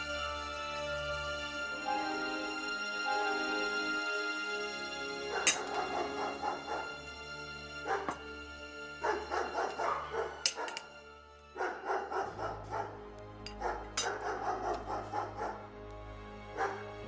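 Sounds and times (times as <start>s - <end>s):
low musical drone: 0.0s - 17.0s
dogs barking: 5.2s - 7.2s, 7.8s - 8.3s, 8.9s - 10.9s, 11.6s - 15.8s, 16.5s - 17.0s.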